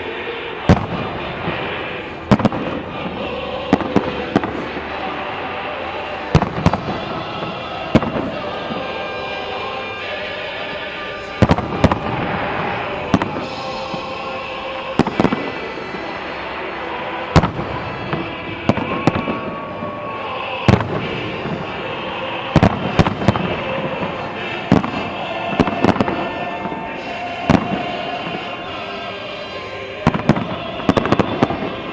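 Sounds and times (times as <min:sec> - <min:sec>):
background music: 0:00.0 - 0:31.9
fireworks exploding: 0:00.6 - 0:28.8, 0:29.4 - 0:31.9.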